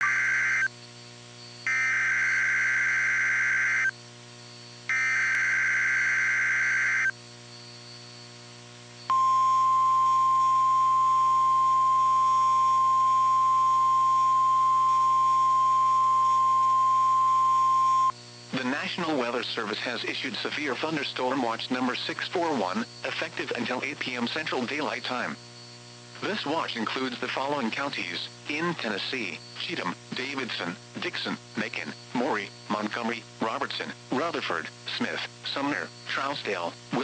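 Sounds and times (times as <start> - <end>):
steady warning alarm tone: 0.0 - 0.7, 1.6 - 4.0, 4.9 - 7.2, 9.1 - 18.2
digital data tones: 1.6 - 3.9.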